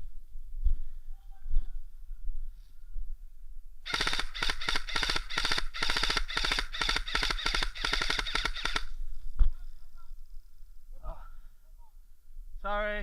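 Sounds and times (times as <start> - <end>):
airsoft gun firing bursts: 3.9 - 8.9.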